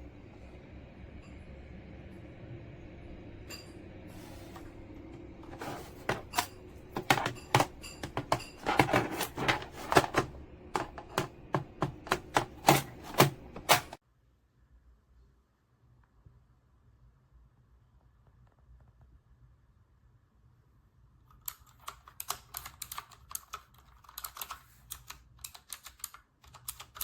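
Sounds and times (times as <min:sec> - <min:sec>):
mechanical keyboard typing: 0:05.5 - 0:14.0, 0:21.4 - 0:27.0.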